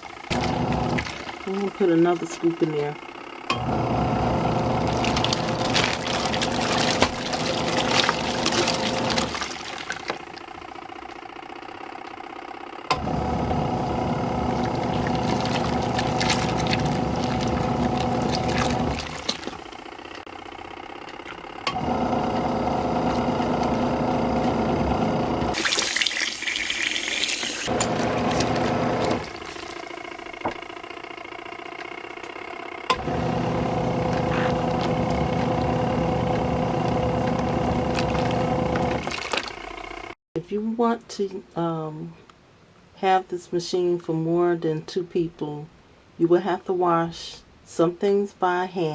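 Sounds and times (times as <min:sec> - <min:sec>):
water churning: 0:00.0 - 0:03.0, 0:03.6 - 0:11.1, 0:13.0 - 0:20.3, 0:21.1 - 0:30.4, 0:33.0 - 0:40.2
washing machine motor humming: 0:00.0 - 0:40.2.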